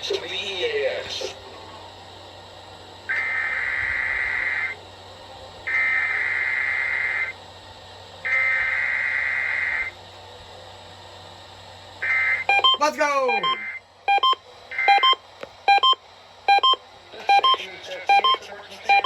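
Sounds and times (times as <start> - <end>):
faint steady hum: 0.0 - 19.0
shrill electronic data tones: 3.1 - 4.8, 5.6 - 7.4, 8.2 - 9.9, 12.0 - 19.0.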